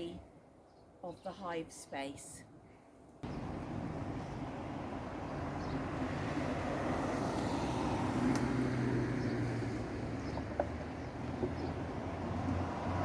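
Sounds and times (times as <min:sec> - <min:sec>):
road traffic rumbling past: 0:03.2 - 0:13.0.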